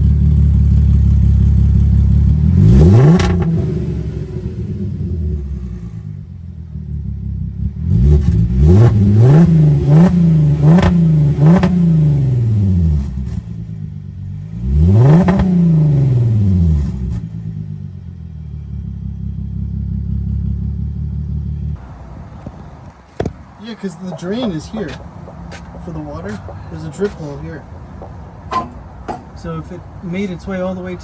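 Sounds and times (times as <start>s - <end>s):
car engine revving: 0.0s - 21.9s.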